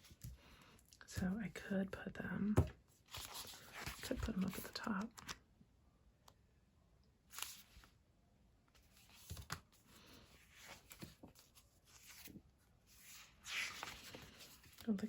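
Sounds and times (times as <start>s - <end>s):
paper rustling: 3.0s - 5.4s, 8.8s - 15.0s
paper crinkling: 3.1s - 5.4s.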